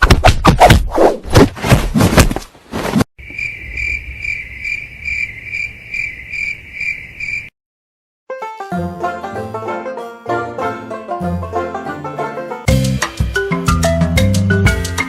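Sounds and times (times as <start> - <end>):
insect trilling: 3.2 - 7.5.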